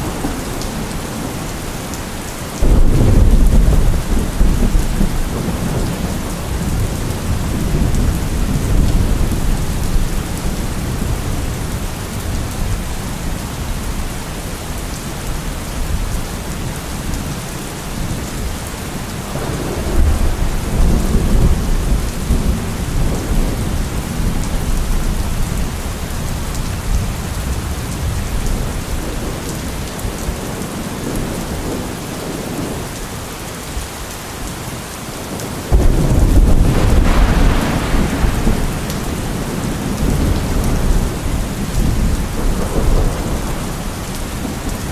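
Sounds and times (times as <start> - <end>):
rain pouring: 0.0 - 44.9
rolling thunder: 2.6 - 13.4, 19.3 - 30.2, 35.4 - 44.9.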